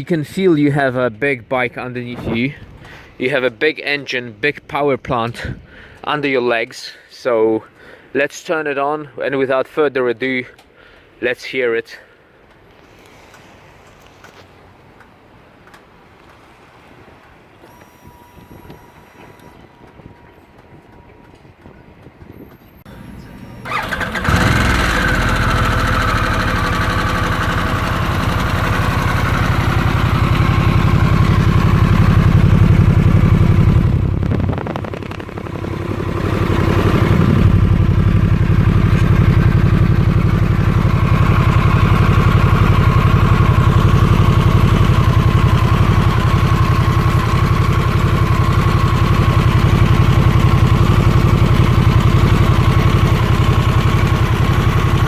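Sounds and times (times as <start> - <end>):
motorcycle engine idling: 22.9 - 55.0.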